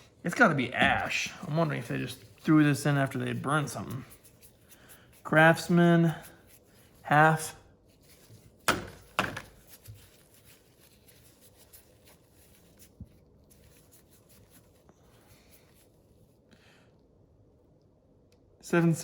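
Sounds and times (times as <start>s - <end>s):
handling and rustling: 7.8s - 16.3s.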